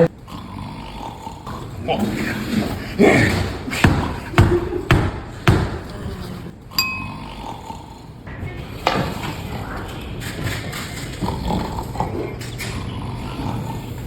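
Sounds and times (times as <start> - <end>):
bright ding: 6.8 - 7.4.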